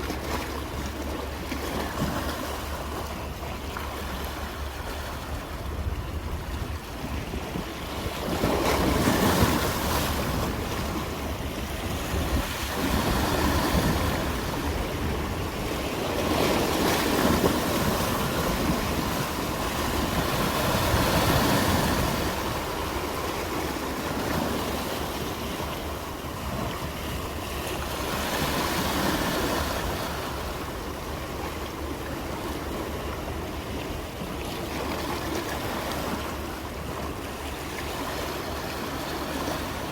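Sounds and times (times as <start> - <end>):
sea waves breaking ashore: 0.0 - 39.9.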